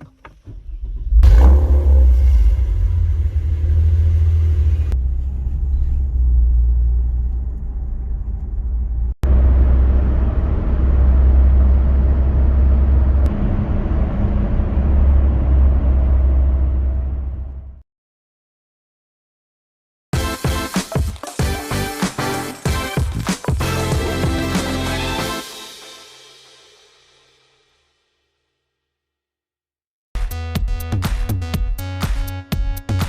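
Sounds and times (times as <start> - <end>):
vehicle rumble: 0.3 - 17.8.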